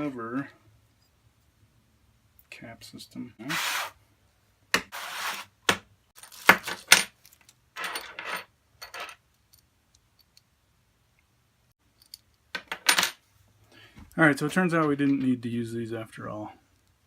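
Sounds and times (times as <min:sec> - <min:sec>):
small metal parts clinking: 0:06.2 - 0:10.4, 0:11.9 - 0:13.2.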